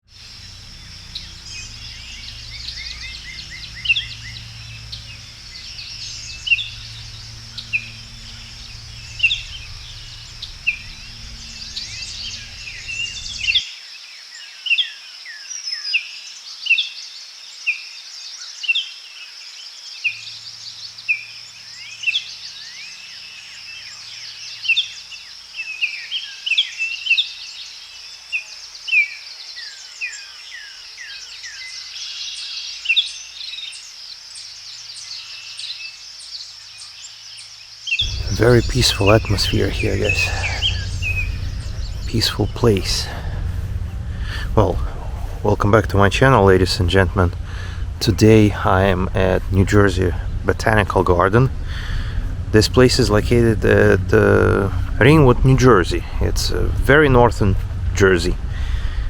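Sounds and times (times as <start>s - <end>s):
low rumble: 0.0s - 13.6s, 38.0s - 59.0s
songbirds chirping: 0.0s - 13.6s, 16.2s - 59.0s
high insect drone: 0.1s - 13.6s, 19.3s - 59.0s.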